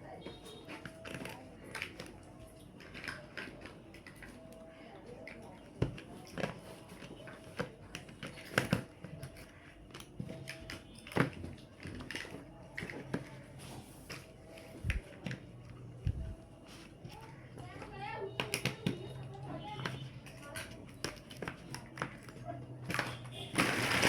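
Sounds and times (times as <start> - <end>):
plastic building blocks clicking: 0.7 - 13.5, 18.4 - 24.0.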